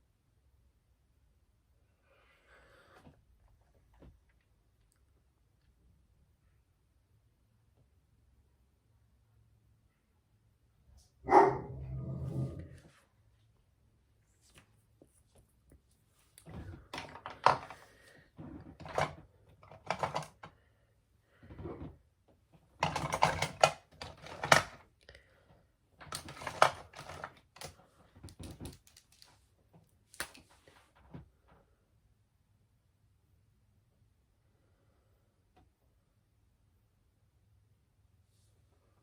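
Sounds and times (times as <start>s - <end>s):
small objects clicking and knocking: 26.0s - 29.4s, 30.1s - 30.5s.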